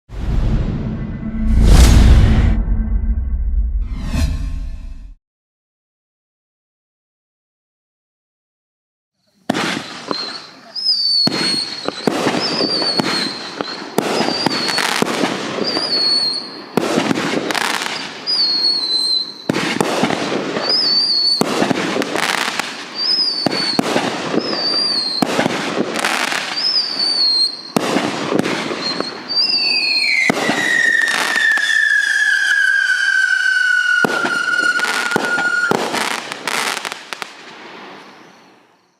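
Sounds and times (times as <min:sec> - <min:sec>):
loud firework bursts: 0:09.5 - 0:38.2
fireworks whistling and bursting: 0:09.5 - 0:38.9
spinning firework long whistle: 0:09.7 - 0:16.8, 0:17.4 - 0:37.0.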